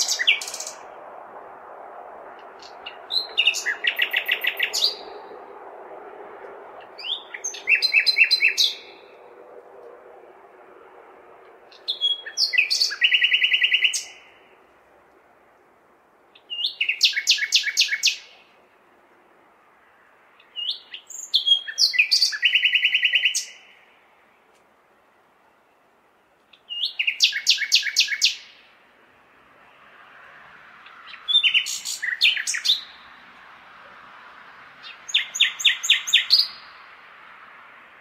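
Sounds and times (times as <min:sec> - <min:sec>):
nightingale singing: 0:00.0 - 0:00.8, 0:02.5 - 0:05.2, 0:06.9 - 0:09.1, 0:11.7 - 0:14.5, 0:16.3 - 0:18.5, 0:20.4 - 0:24.0, 0:25.6 - 0:28.8, 0:30.8 - 0:33.0, 0:34.8 - 0:36.8
faint city hum: 0:00.0 - 0:38.0.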